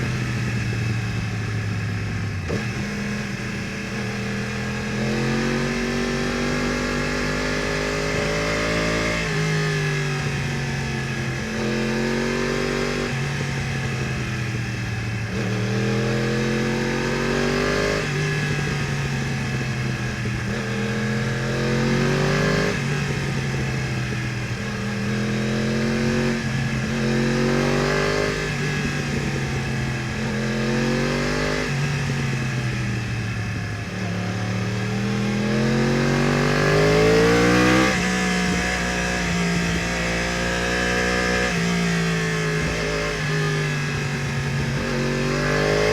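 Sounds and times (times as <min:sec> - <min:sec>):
motorcycle engine accelerating: 0:00.0 - 0:45.9.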